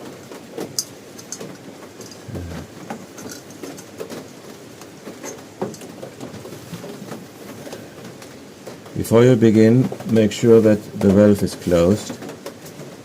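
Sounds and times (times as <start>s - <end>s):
metal camping gear clicking: 0.6s - 6.2s.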